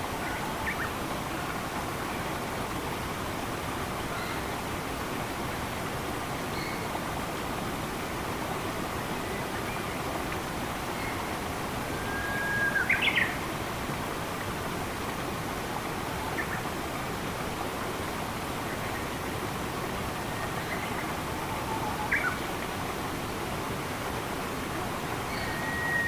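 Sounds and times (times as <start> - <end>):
water rushing: 0.0 - 26.0
bird whistling call: 11.9 - 13.3, 25.3 - 26.0.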